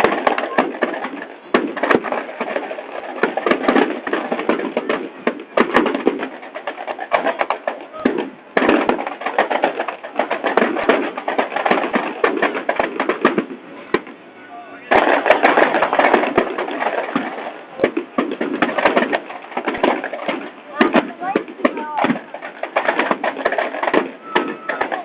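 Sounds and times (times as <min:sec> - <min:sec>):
bonfire crackling and popping: 0:00.0 - 0:25.0
crowd voices: 0:13.5 - 0:18.4, 0:19.2 - 0:22.8, 0:23.4 - 0:25.0.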